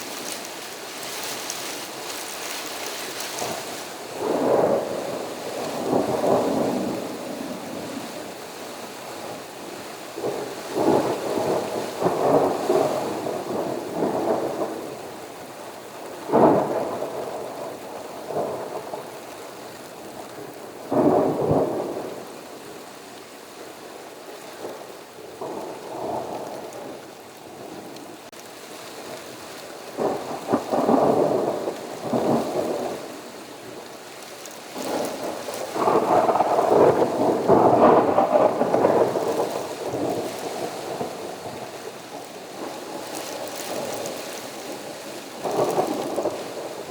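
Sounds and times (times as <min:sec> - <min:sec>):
steady rain: 0:00.0 - 0:46.9
thunder cracking and rumbling: 0:03.4 - 0:08.3, 0:10.2 - 0:19.2, 0:20.2 - 0:22.3, 0:29.9 - 0:33.9, 0:34.7 - 0:46.9.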